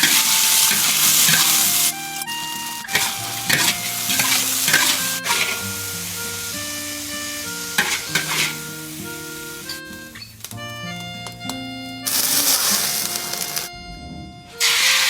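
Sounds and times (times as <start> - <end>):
scraping in a pan: 0.0 - 2.0, 2.9 - 5.9, 7.7 - 8.8
food sizzling in a pan: 0.0 - 10.5, 12.1 - 13.7, 14.6 - 15.0
light background music: 0.0 - 15.0.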